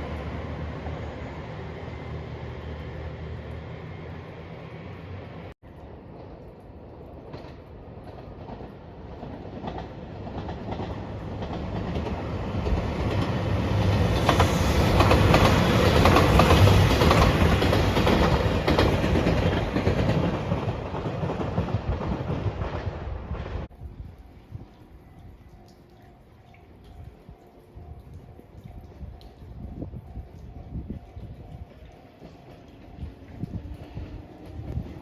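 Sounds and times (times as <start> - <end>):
passenger train passing: 0.0 - 23.7, 29.5 - 35.0
wheels clacking over rail joints: 7.2 - 23.7.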